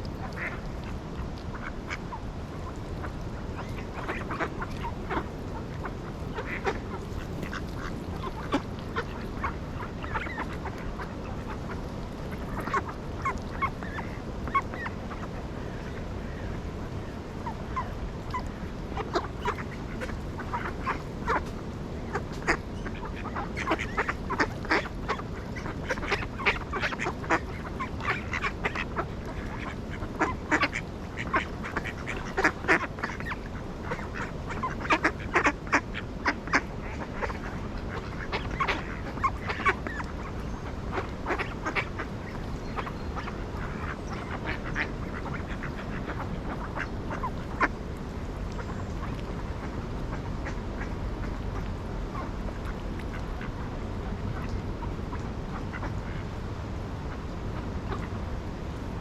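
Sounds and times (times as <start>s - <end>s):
low background noise: 0.0s - 59.0s
ducks quacking: 0.2s - 2.2s, 3.0s - 16.4s, 17.0s - 47.8s, 48.5s - 56.3s.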